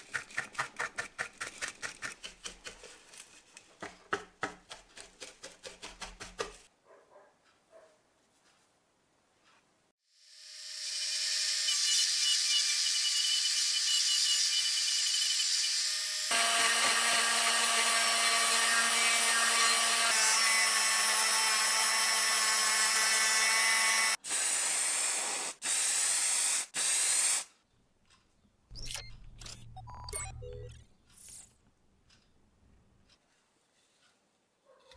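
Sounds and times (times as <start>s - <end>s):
electric power tool whining: 10.3s - 20.0s.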